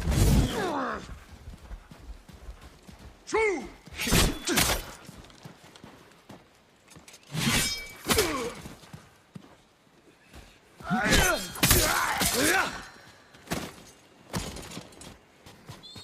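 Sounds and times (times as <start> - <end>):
swords clashing: 4.0 - 5.0, 7.3 - 8.5, 11.0 - 12.8.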